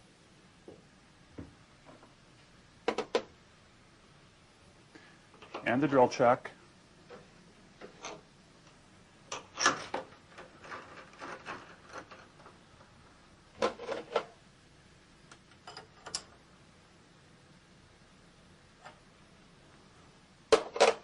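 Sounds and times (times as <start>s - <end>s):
metal tools clicking and knocking: 15.6s - 16.3s.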